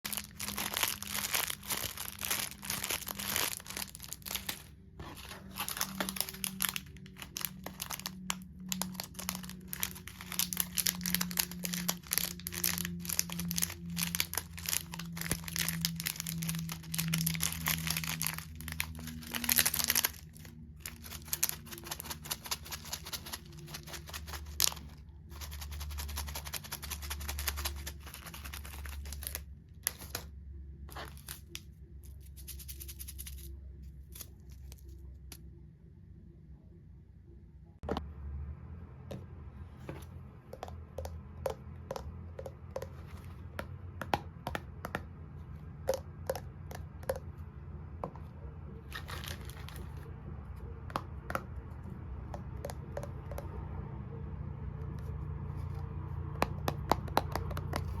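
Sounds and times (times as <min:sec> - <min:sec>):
slime crackling and popping: 0:00.0 - 0:04.6, 0:05.4 - 0:24.8.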